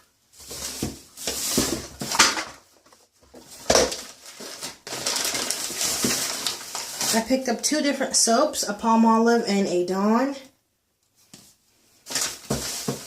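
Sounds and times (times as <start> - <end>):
items rustling: 0.0 - 7.8, 11.1 - 13.0.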